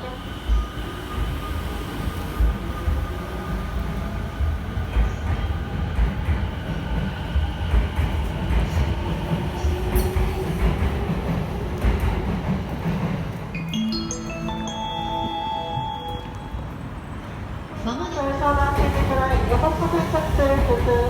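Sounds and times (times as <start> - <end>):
train hum and whine: 0.0 - 21.0
electric train pulling in: 9.7 - 21.0.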